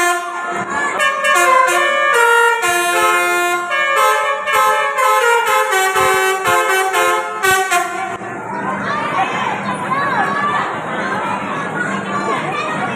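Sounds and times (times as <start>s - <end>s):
tuned bus horns playing a melody: 0.0s - 8.2s.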